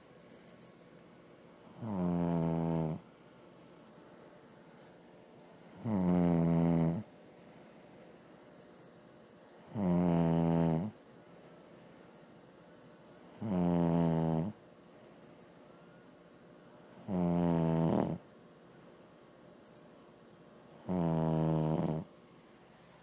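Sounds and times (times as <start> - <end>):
person snoring: 1.6 - 3.1, 5.6 - 7.1, 9.6 - 11.0, 13.2 - 14.6, 16.9 - 18.3, 20.7 - 22.1.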